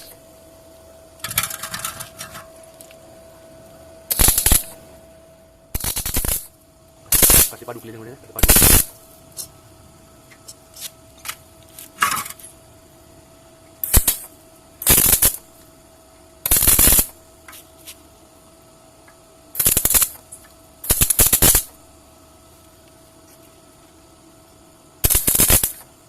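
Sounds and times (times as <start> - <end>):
arc welding crackling: 0.0 - 0.3, 4.1 - 4.9, 5.7 - 9.5, 13.8 - 15.7, 16.4 - 18.0, 19.5 - 23.5, 25.0 - 26.0
faint steady hum: 0.0 - 26.0.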